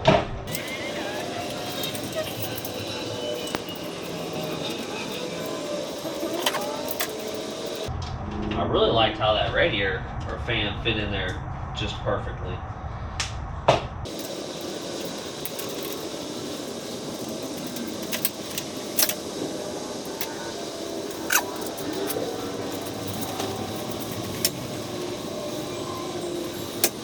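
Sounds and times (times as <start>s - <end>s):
sharp metal clicks and clinks: 0.5s - 7.9s, 14.1s - 27.0s
steady hiss: 0.5s - 7.9s, 14.1s - 27.0s.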